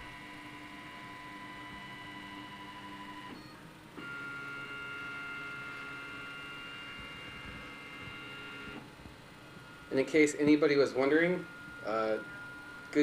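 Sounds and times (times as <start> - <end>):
stepper motors whining: 0.0 - 9.0, 9.6 - 13.0.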